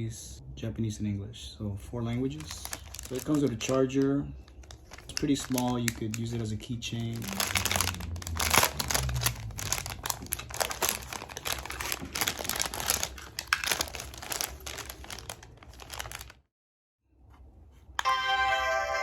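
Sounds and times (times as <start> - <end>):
plastic packaging crinkling: 2.3 - 16.5.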